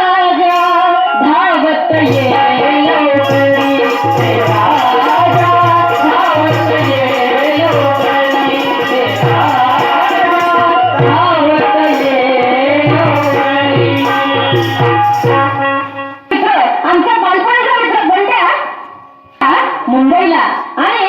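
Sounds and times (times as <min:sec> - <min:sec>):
folk singing: 0:00.0 - 0:16.2
drum beats: 0:00.4 - 0:16.4.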